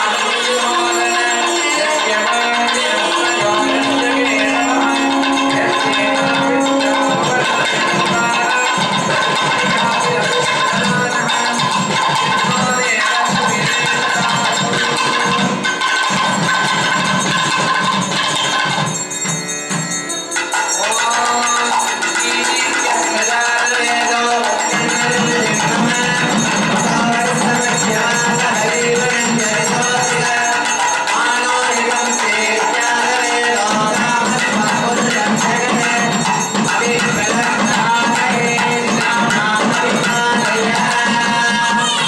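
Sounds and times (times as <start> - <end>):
steady percussion: 0.0 - 42.0.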